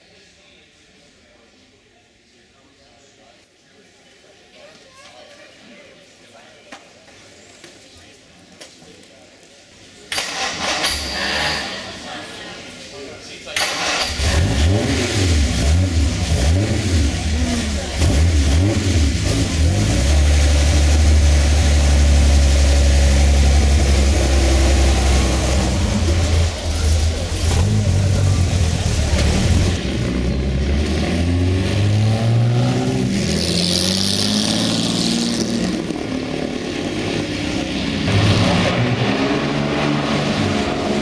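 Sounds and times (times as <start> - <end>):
racing car engine revving: 13.6 - 41.0.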